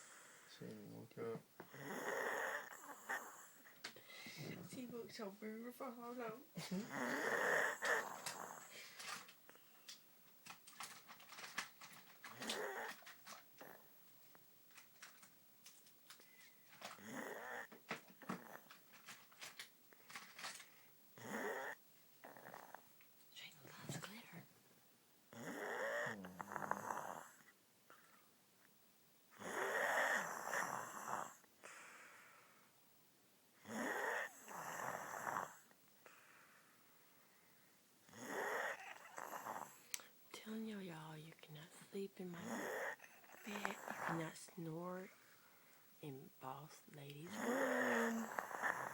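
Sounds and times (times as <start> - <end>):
woman snoring: 1.6 - 4.6, 6.1 - 9.2, 12.2 - 13.8, 16.9 - 18.8, 21.2 - 22.8, 25.3 - 27.4, 29.4 - 31.4, 33.6 - 35.7, 38.1 - 40.9, 41.6 - 45.2, 46.6 - 48.9
faint clicks and rustles: 7.8 - 17.0, 17.6 - 20.9.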